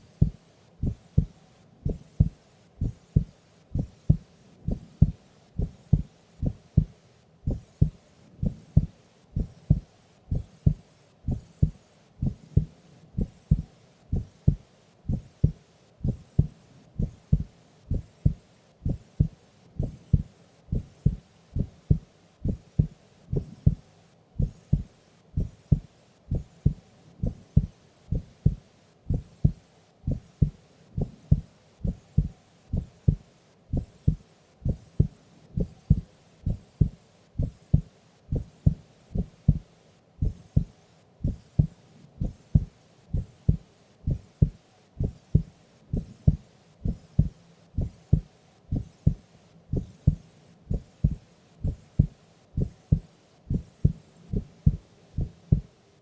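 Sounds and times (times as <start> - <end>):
heartbeat thuds: 0.0 - 23.8, 24.4 - 55.7.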